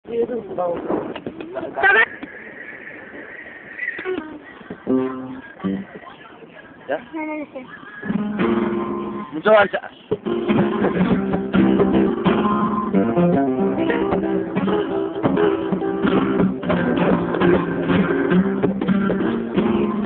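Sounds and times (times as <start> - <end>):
flamenco acoustic guitar: 4.0 - 6.2, 8.0 - 20.0.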